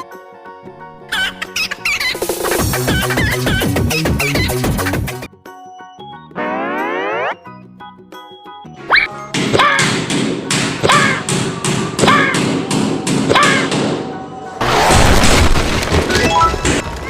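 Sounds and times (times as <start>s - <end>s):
short falling tone: 6.4s - 7.4s
rhythmic thumping knocks: 9.3s - 14.1s.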